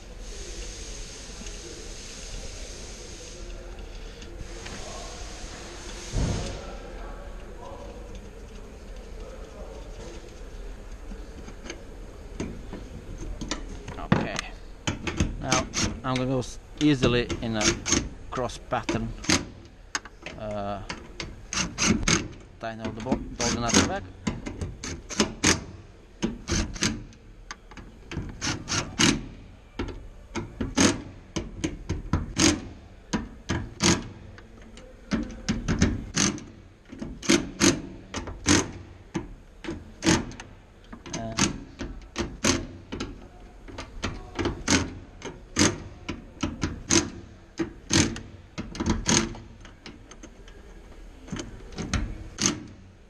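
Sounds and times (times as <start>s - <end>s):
ratchet wrench clicking: 35.8s - 36.5s.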